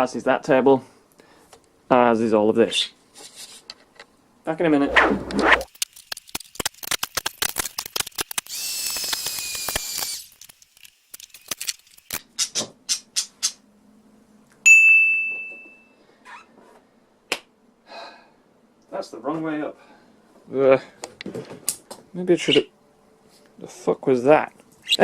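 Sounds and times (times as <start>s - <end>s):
ringing clink: 14.7s - 15.9s
clicks and knocks of clutter: 21.0s - 22.1s.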